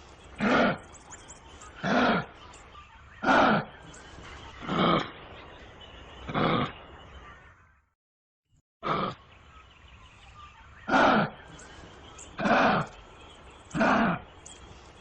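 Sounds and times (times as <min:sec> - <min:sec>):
kangaroo calls: 0:00.3 - 0:05.1, 0:10.4 - 0:13.1, 0:13.7 - 0:14.4.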